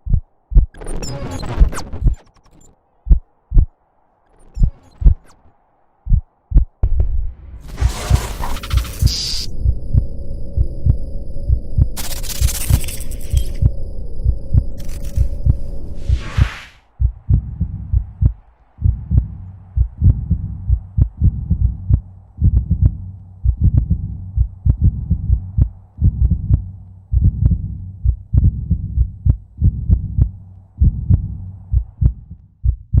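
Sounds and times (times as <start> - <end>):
loud low thumps: 6.1 - 12.0.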